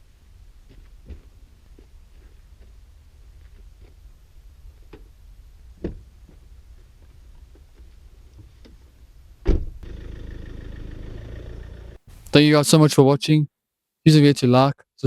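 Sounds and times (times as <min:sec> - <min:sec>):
vehicle door shutting: 0:09.4 - 0:09.8
engine humming: 0:09.8 - 0:12.4.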